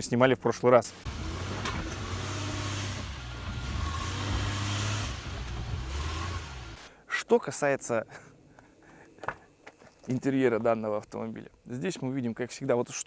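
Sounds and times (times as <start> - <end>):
car engine hum: 0.9 - 6.9.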